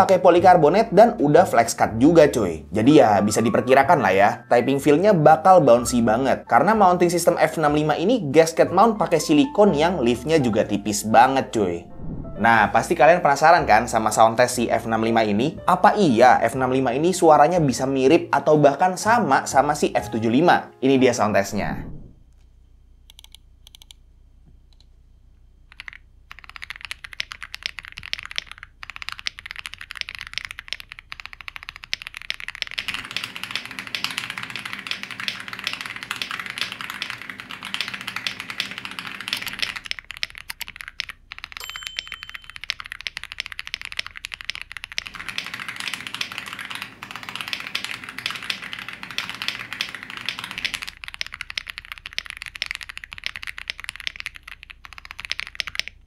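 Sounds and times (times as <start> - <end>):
mechanical keyboard key clacking: 25.7 - 56.0.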